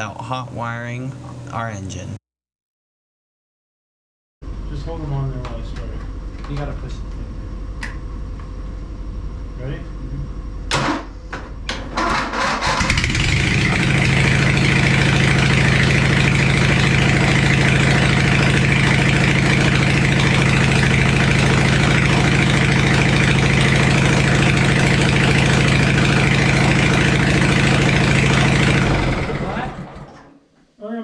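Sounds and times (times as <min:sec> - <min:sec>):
lawn mower engine running: 0:12.0 - 0:30.3.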